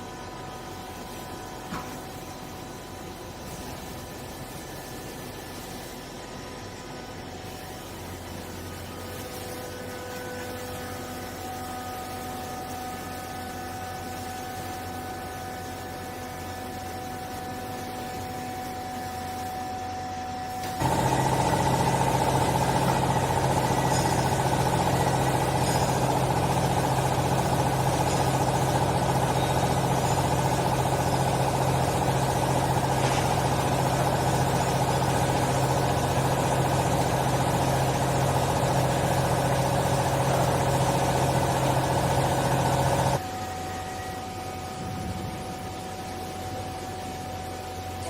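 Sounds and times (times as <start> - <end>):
hydraulic baler humming: 20.6 - 46.7.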